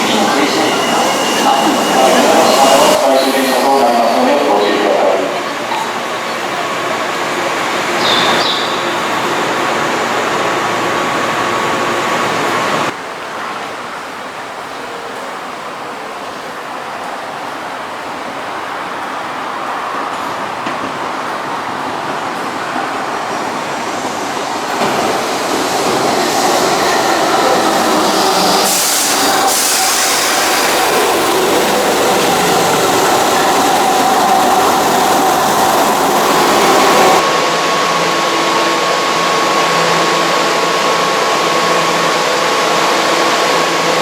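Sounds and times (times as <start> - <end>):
high hiss or squeal: 0.0 - 4.8, 25.1 - 37.2
electric train rumbling: 0.0 - 13.1, 16.4 - 44.0.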